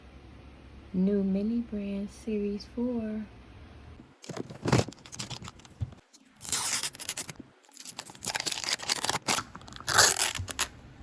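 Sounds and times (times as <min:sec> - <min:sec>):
plastic packaging tearing: 0:04.2 - 0:05.8, 0:06.4 - 0:10.7.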